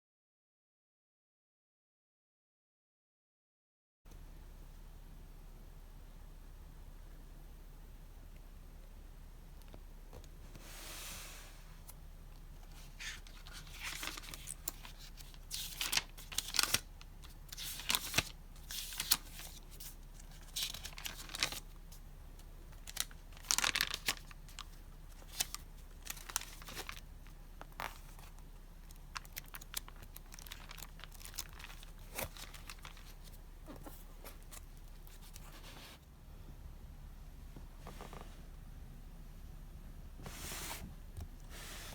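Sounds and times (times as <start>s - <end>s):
paper and packaging tearing: 13.0s - 21.6s, 22.8s - 27.0s, 29.1s - 33.3s.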